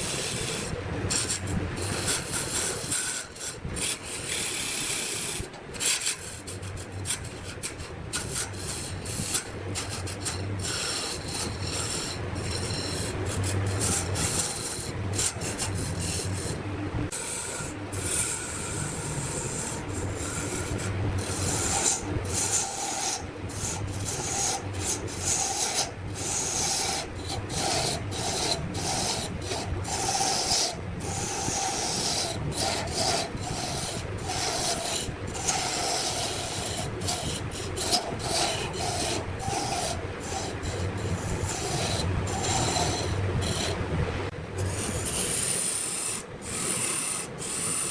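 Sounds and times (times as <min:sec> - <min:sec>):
lathe tool scraping wood: 0:00.0 - 0:47.9.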